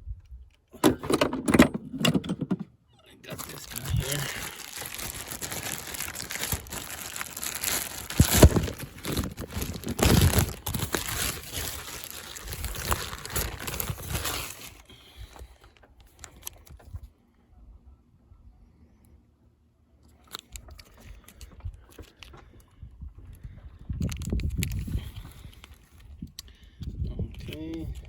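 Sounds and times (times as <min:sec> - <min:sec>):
crinkling and rustling handling: 0:03.2 - 0:17.2, 0:20.0 - 0:28.0.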